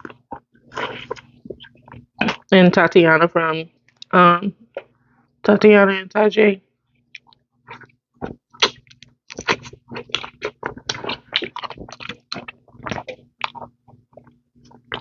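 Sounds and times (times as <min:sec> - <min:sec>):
wet chewing and smacking: 0:00.0 - 0:02.4, 0:07.1 - 0:15.0.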